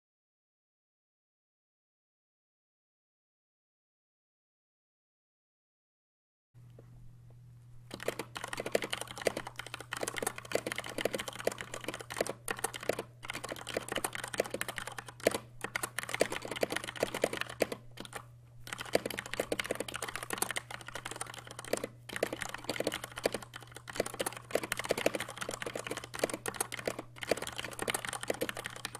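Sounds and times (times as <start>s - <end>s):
steady low hum: 6.6s - 28.9s
mechanical keyboard key clacks: 7.9s - 28.9s.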